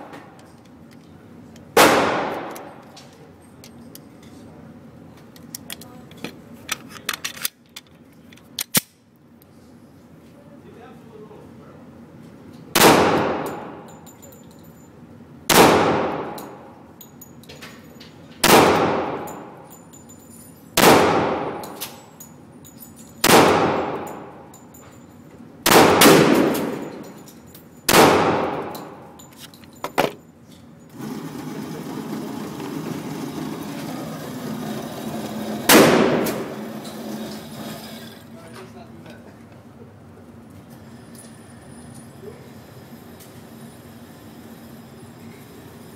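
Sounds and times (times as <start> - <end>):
pistol shots echoing: 1.8 - 2.8, 12.8 - 13.9, 15.5 - 16.6, 18.4 - 19.5, 20.8 - 21.8, 23.2 - 24.4, 25.6 - 27.0, 27.9 - 29.0, 35.7 - 36.5.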